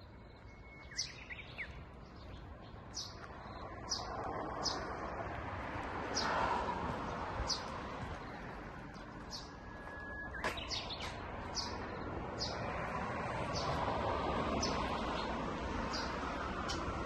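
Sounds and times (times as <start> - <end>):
bird chirping: 0.0 - 4.9, 7.4 - 12.7.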